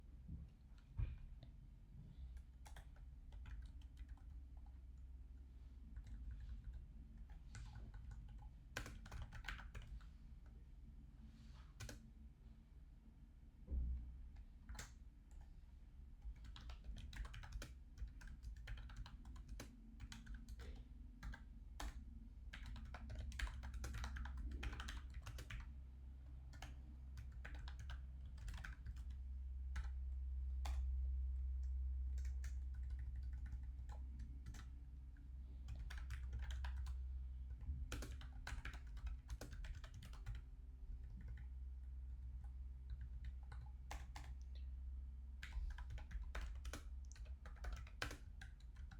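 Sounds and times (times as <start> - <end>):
low hum: 28.0 - 38.4.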